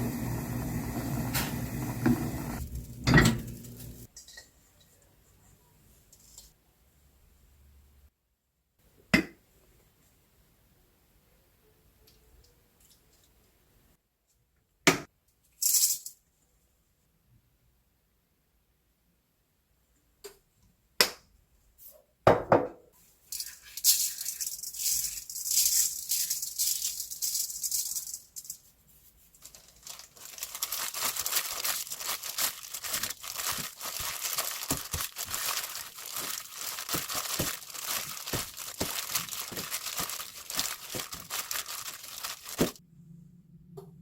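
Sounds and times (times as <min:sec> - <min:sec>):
crinkling and rustling handling noise: 0:23.0 - 0:42.8.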